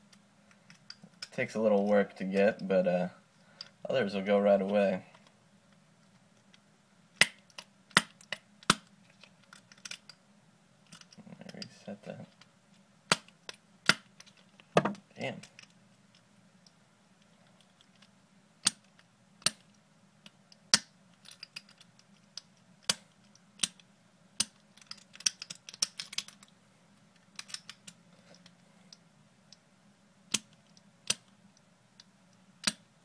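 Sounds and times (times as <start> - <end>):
lock clicking and rattling: 9.2 - 10.2, 24.4 - 26.5, 27.2 - 28.0.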